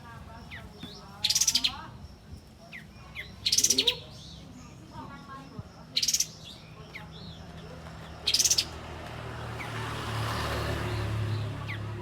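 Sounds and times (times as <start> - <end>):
bird chirping: 0.0 - 8.8.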